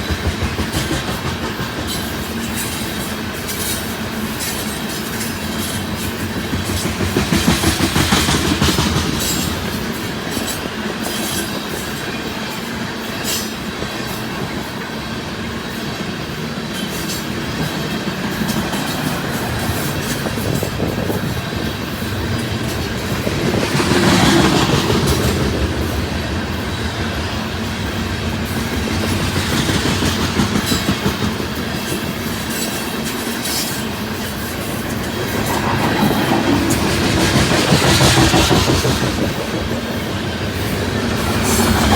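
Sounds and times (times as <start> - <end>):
train wheels clicking over rail joints: 0.0 - 41.9.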